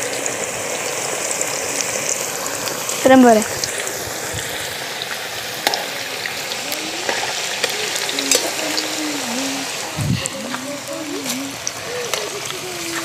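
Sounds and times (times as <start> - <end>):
fries sizzling in hot oil: 0.0 - 13.0.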